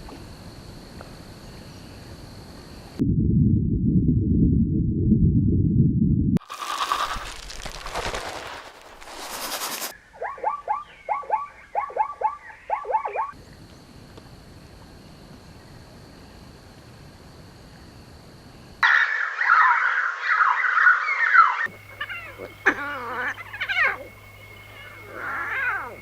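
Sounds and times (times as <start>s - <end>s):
dense chattering animal calls: 10.2s - 13.4s, 18.8s - 26.0s
animal calls falling in pitch: 18.8s - 26.0s
thin steady high tone: 21.7s - 26.0s.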